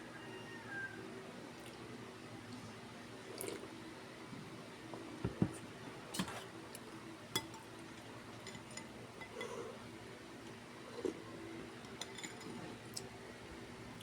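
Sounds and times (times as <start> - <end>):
utensils clinking on a bowl: 7.4 - 9.6, 11.8 - 12.8.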